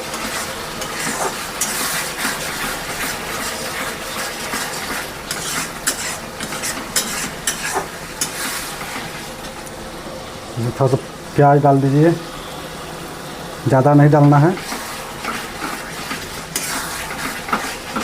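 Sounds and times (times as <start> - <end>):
spices sizzling in a pan: 0.0 - 9.9, 12.6 - 18.0
spatula scraping a pan: 0.1 - 9.2, 14.4 - 18.0.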